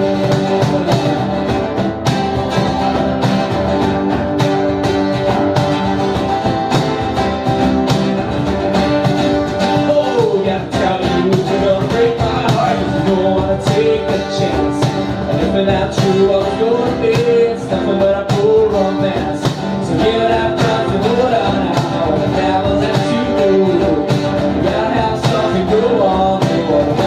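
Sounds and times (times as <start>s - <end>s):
bass: 0.0s - 27.0s
guitar melody: 0.0s - 27.0s
steady drums: 0.0s - 27.0s.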